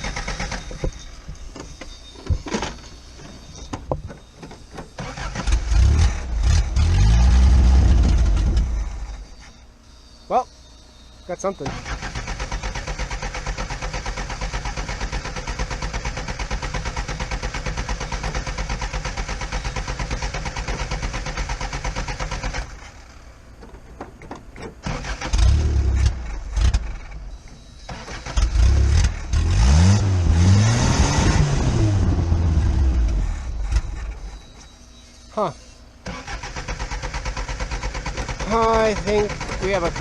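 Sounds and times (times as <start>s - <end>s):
car engine cranking and revving: 3.7s - 9.5s, 11.7s - 23.2s, 24.0s - 34.6s, 36.0s - 40.0s.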